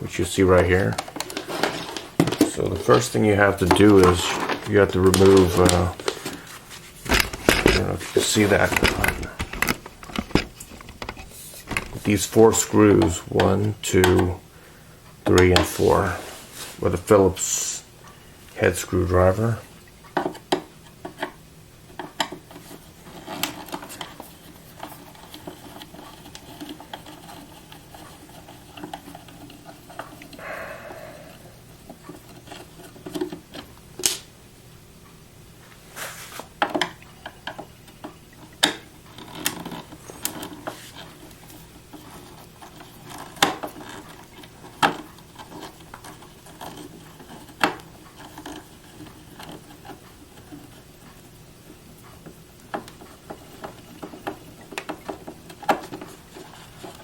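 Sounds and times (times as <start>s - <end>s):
screwdriver scraping: 5.1s - 12.2s
screwdriver clicking and knocking: 8.7s - 12.1s.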